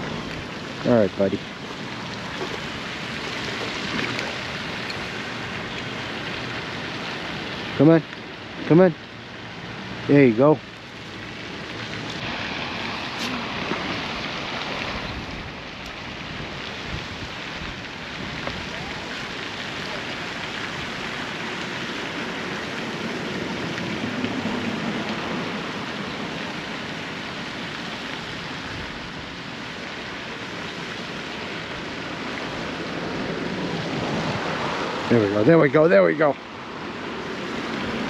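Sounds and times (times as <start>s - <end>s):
water hissing: 10.7s - 15.9s.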